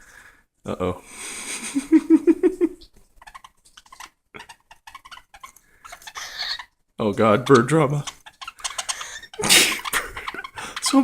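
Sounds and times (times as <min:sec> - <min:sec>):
bird clicks and scratchy chatter: 0:03.2 - 0:06.7, 0:07.3 - 0:11.0
birds growling calls: 0:03.3 - 0:06.7, 0:07.4 - 0:11.0.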